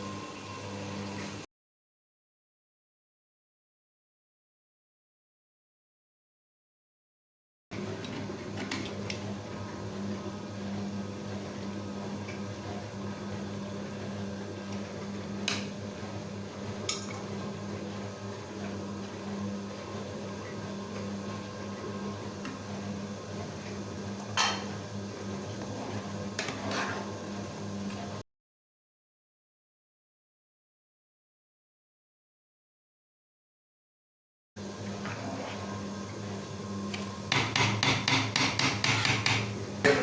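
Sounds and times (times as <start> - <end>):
utensils knocking against pots: 37.3 - 40.0.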